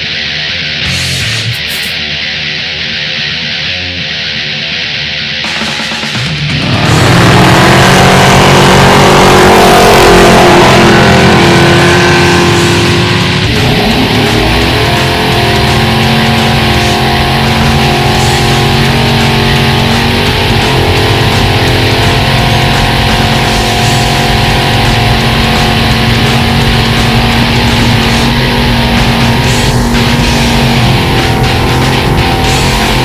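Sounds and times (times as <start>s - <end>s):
loud rock music with electric guitar: 0.0s - 33.0s.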